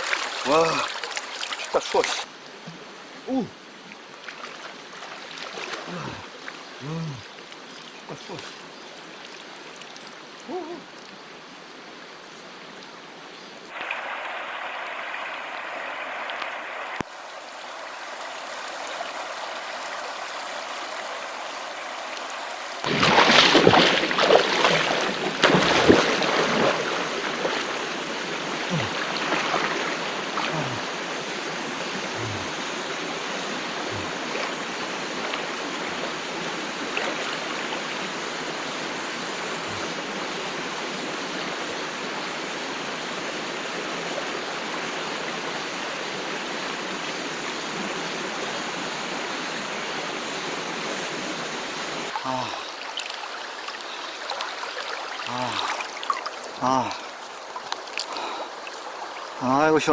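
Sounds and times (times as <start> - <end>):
water splashing: 0.0 - 3.5, 4.2 - 7.2, 13.7 - 35.8, 52.1 - 59.9
low water gurgles: 0.0 - 11.7, 13.7 - 46.1, 47.1 - 59.9
stream water rushing: 0.0 - 59.9.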